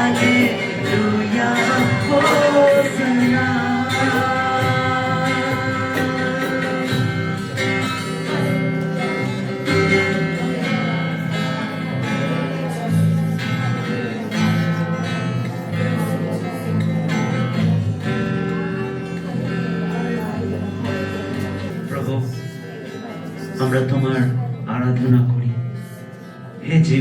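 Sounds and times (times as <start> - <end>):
worship band music: 0.0 - 13.3
acoustic guitar strumming: 0.0 - 27.0.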